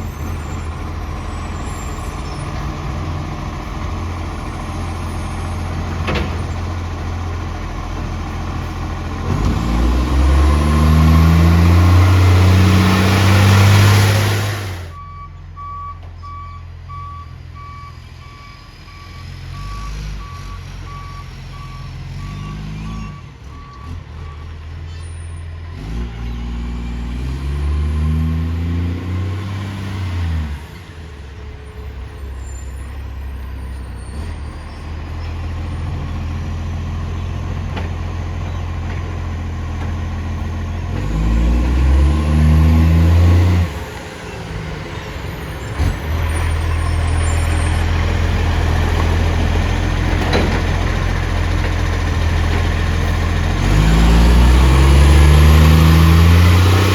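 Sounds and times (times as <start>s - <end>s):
diesel engine idling and revving: 0.0s - 56.9s
reversing beeper: 9.8s - 24.5s.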